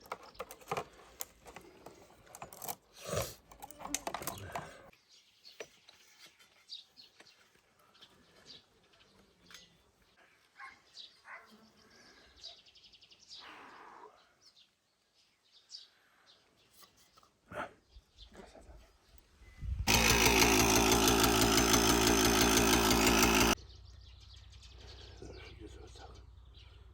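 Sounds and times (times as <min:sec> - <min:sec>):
birds chirping: 0:19.9 - 0:26.9.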